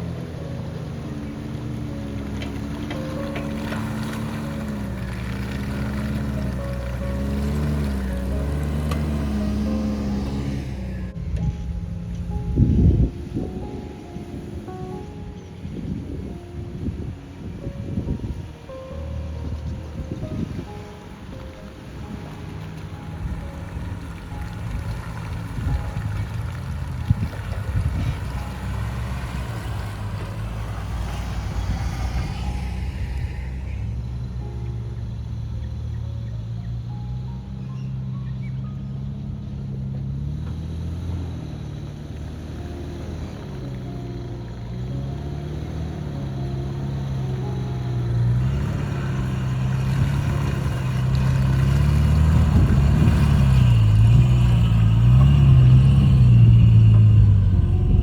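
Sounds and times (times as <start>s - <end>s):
rushing noise: 0.0s - 35.0s
low engine drone: 0.0s - 58.0s.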